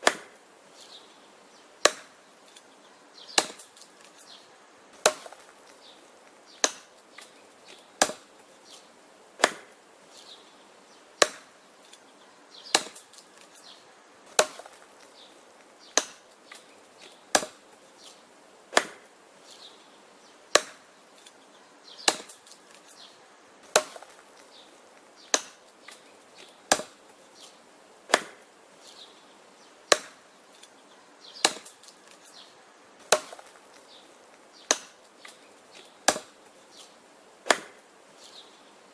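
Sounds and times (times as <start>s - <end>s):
wood chopping strikes: 0.0s - 0.4s, 1.8s - 2.7s, 3.3s - 4.3s, 5.0s - 8.4s, 9.4s - 9.8s, 11.2s - 12.0s, 12.7s - 19.1s, 20.5s - 21.4s, 22.0s - 23.0s, 23.6s - 28.5s, 29.9s - 30.8s, 31.4s - 32.4s, 33.0s - 38.5s.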